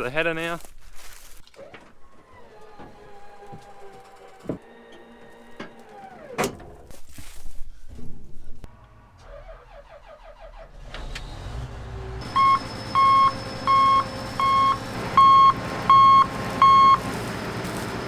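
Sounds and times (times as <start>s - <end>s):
heavy vehicle engine running: 8.6s - 18.0s
reversing alarm beeping: 12.2s - 17.1s.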